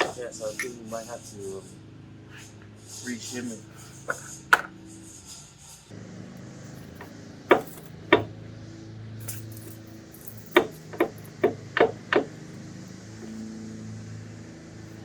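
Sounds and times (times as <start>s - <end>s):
low steady hum: 5.9s - 15.0s
sharp knocks: 7.5s - 8.3s, 10.6s - 12.4s.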